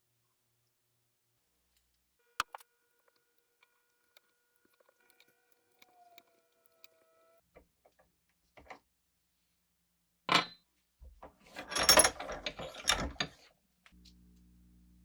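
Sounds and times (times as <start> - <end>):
clattering and scraping: 11.4 - 13.4.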